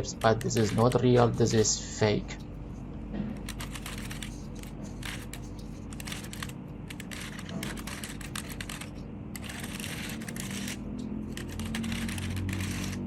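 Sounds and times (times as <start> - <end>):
plastic puzzle cube clicking: 3.5 - 13.0.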